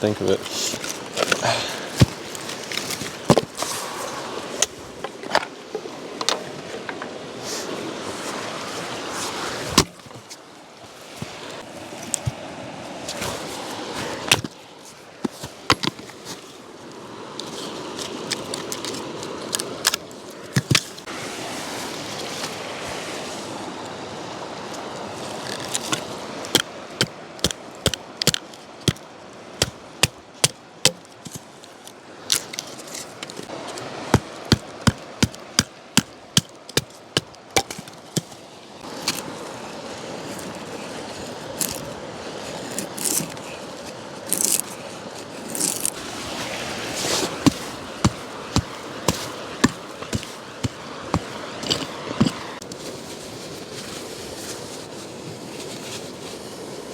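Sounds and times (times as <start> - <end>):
firewood splitting knocks: 9.8 - 10.2, 26.5 - 29.0, 34.1 - 38.4.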